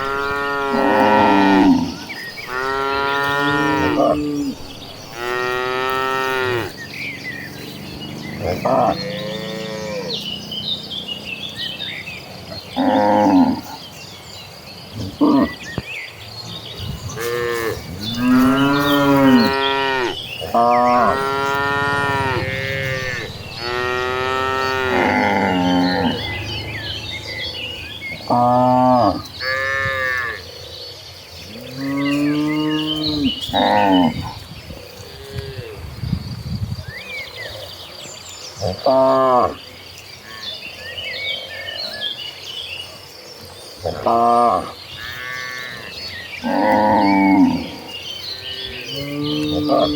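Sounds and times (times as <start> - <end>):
cows mooing: 0.0 - 6.8, 7.5 - 10.3, 12.7 - 13.8, 17.1 - 30.5, 31.5 - 35.8, 43.8 - 49.9.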